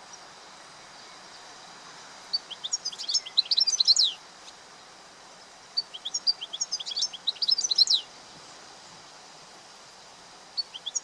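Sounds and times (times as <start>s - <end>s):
faint steady hiss: 0.0s - 11.0s
goldfinch twittering: 5.8s - 8.1s.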